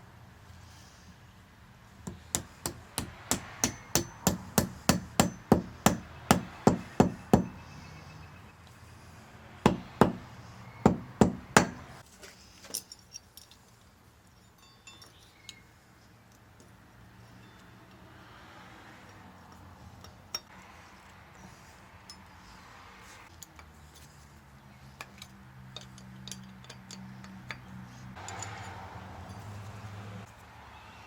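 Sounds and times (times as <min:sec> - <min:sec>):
hand hammer strikes: 0:02.0 - 0:07.6, 0:09.6 - 0:10.2, 0:10.8 - 0:11.9
light metallic clinks: 0:12.5 - 0:18.1, 0:21.3 - 0:22.6, 0:25.0 - 0:29.9.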